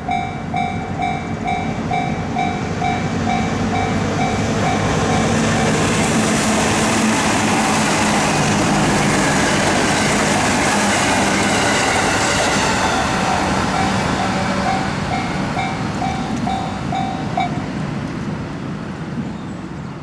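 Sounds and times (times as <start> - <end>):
level crossing alarm bell: 0.0 - 5.8, 12.8 - 17.7
train wheel and rail noise: 0.0 - 20.0.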